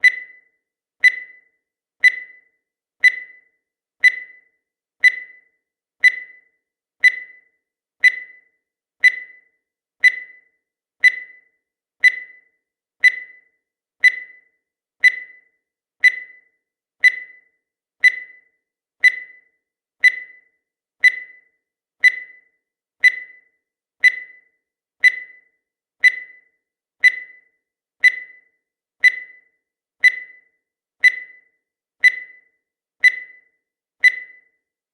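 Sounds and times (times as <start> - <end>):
short electronic beeps: 0.0 - 34.7.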